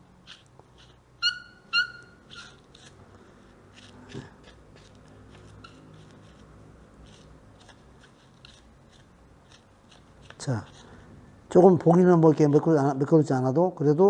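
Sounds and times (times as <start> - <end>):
wipe rubbing on racket: 0.0 - 11.2
short high squeaks: 1.2 - 2.9, 5.5 - 6.0.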